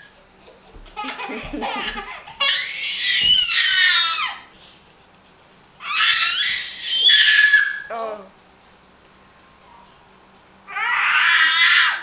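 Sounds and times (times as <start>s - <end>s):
child screaming: 2.5s - 4.4s, 5.8s - 7.9s, 10.7s - 12.0s.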